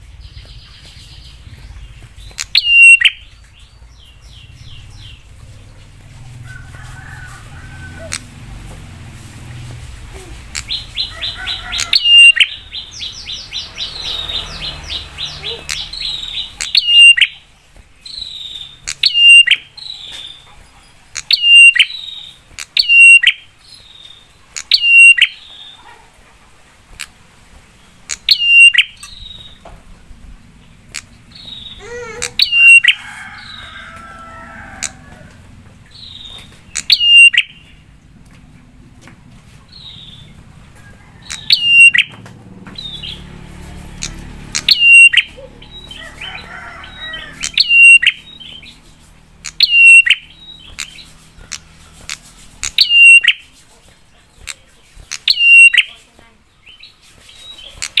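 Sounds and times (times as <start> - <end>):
bird rapid ticking notes: 0.2 - 5.6, 10.5 - 20.4, 21.1 - 23.4, 24.5 - 25.4, 27.8 - 29.6, 30.4 - 33.0, 35.9 - 37.9, 41.2 - 46.0, 47.3 - 53.5, 54.4 - 56.0
bird sharp downward-slurred calls: 2.2 - 3.4, 10.0 - 17.4, 18.0 - 20.5, 21.2 - 23.5, 24.6 - 25.9, 28.1 - 29.6, 30.9 - 37.8, 41.2 - 43.3, 43.9 - 53.5, 54.5 - 56.0.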